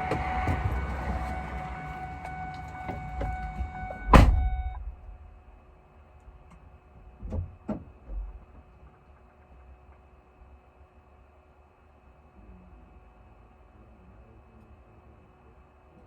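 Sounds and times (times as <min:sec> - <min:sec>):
truck door slamming: 0:00.0 - 0:05.3.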